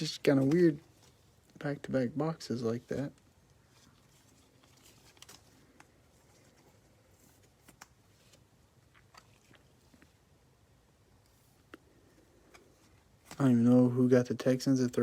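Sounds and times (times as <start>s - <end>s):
trading cards clicking and rustling: 0.0s - 1.5s, 4.0s - 10.2s.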